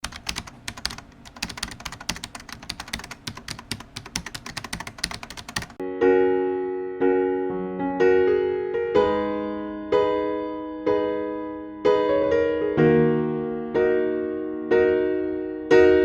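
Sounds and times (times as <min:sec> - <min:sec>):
keyboard typing clicks: 0:00.0 - 0:05.8
electric piano chords: 0:00.0 - 0:16.0.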